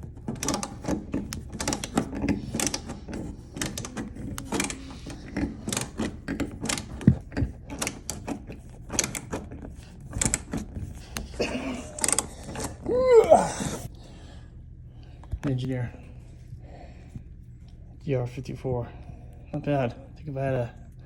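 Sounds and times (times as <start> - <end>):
ratcheting screwdriver clicking: 0.3 - 11.3.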